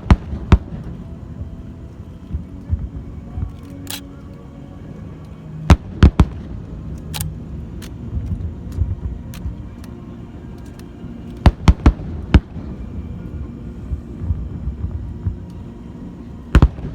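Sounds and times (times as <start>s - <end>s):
low rumble: 0.0s - 16.9s.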